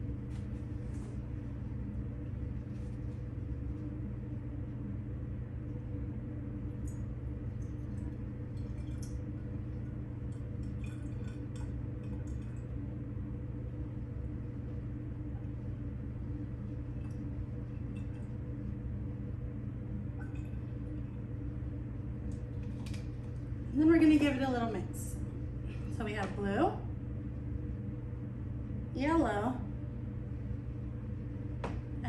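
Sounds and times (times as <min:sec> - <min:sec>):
steady low hum: 0:00.0 - 0:32.0
liquid pouring: 0:07.6 - 0:12.8, 0:16.8 - 0:18.7, 0:20.1 - 0:21.4.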